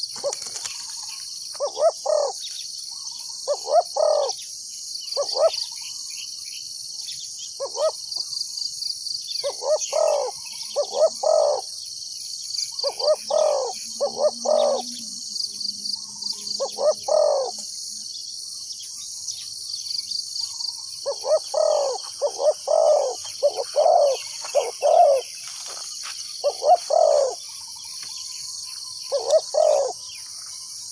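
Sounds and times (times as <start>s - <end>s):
doves cooing: 0.0s - 0.7s, 1.6s - 2.4s, 3.5s - 4.4s, 5.2s - 5.6s, 7.6s - 8.0s, 9.4s - 11.7s, 12.8s - 15.2s, 16.4s - 17.6s, 21.0s - 27.4s, 29.0s - 30.0s
high insect drone: 0.0s - 30.9s.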